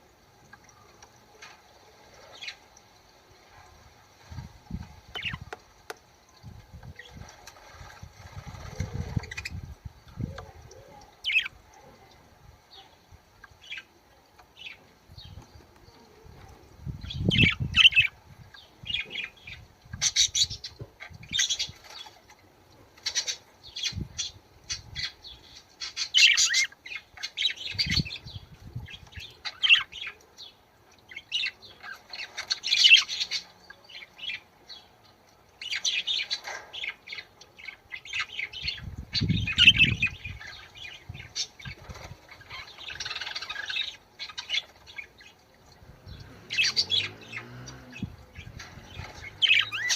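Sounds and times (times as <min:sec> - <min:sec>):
budgerigars chirping: 0:46.5 - 0:49.9.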